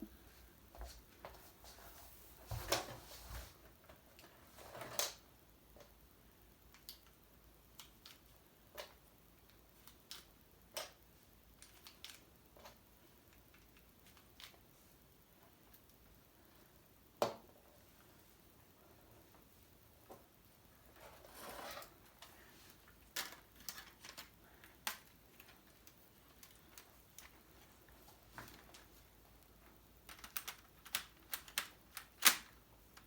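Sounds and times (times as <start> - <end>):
plastic bricks clicking: 30.1 - 32.5.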